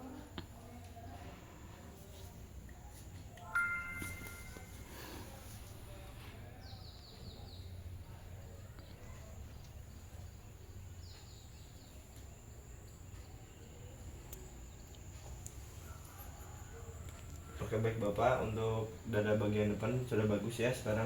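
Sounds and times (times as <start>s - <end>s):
faint high whine: 3.4s - 5.5s.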